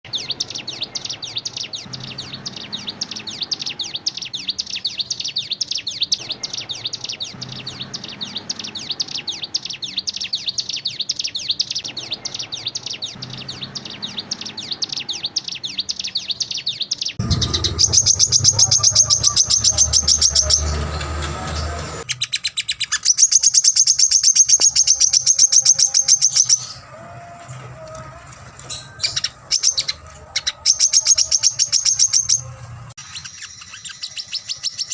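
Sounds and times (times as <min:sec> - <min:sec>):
songbird high chirps: 0:00.1 - 0:26.8, 0:28.7 - 0:32.4, 0:33.0 - 0:34.9
bird trilling: 0:00.1 - 0:26.9, 0:28.6 - 0:34.9
low rumble: 0:17.2 - 0:22.0.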